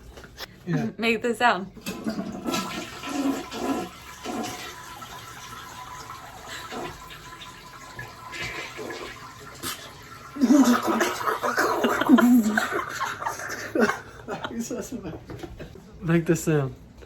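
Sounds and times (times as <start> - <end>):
toilet flushing: 1.8 - 14.2.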